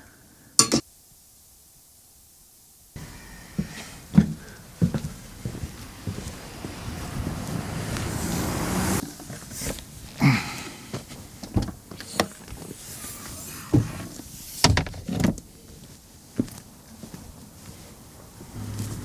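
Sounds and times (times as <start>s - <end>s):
rushing noise: 5.7s - 9.0s
clunks and thuds: 11.5s - 15.5s.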